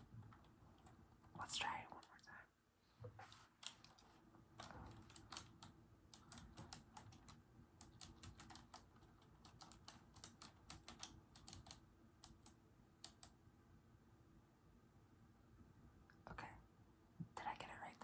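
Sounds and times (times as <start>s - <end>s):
mechanical keyboard key clicks: 5.1s - 13.3s.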